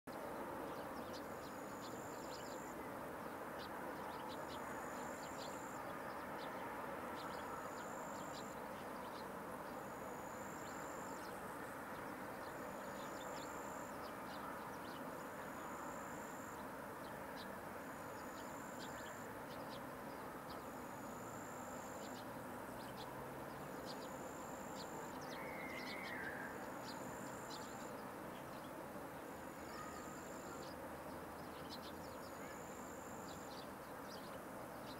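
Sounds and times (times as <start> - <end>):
steady background noise: 0.1 - 34.9
insect chirping: 9.8 - 11.4, 12.5 - 14.0, 20.7 - 22.2, 23.8 - 27.9.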